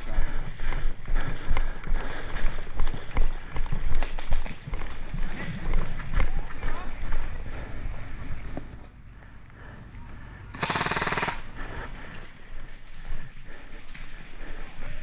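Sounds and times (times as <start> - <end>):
airsoft rifle full-auto burst: 10.5 - 12.2.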